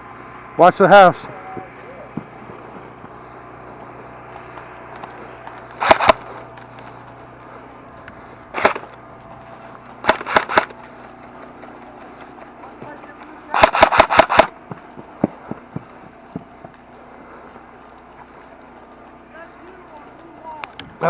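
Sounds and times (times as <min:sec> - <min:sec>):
airsoft guns firing: 0:05.8 - 0:06.4, 0:08.5 - 0:09.0, 0:10.0 - 0:10.9, 0:12.8 - 0:14.8.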